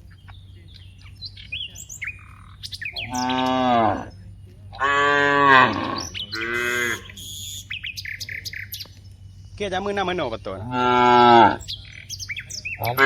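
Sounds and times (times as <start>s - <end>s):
small birds chirping: 0.0s - 13.0s
cows mooing: 1.7s - 7.2s, 9.7s - 11.9s, 12.6s - 13.0s.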